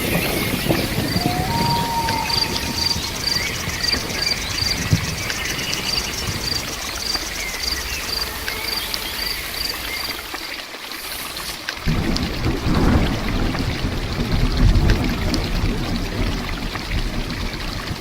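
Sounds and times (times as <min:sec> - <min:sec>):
crickets chirping: 0:00.0 - 0:11.6
steady rain falling: 0:00.0 - 0:18.0.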